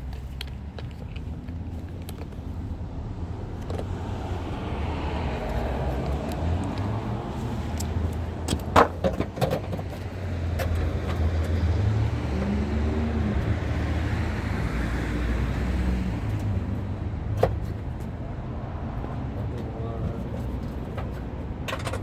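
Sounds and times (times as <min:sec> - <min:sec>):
low vehicle hum: 0:00.0 - 0:22.0
metallic clicks and knocks: 0:20.9 - 0:22.0.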